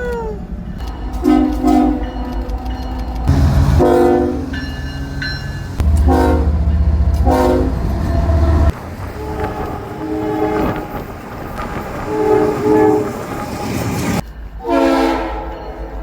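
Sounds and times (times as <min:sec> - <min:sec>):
low rumble of train: 0:00.0 - 0:16.0
multi-chime train horn blasts: 0:01.1 - 0:02.2, 0:03.3 - 0:08.4, 0:12.0 - 0:13.2, 0:14.6 - 0:16.0.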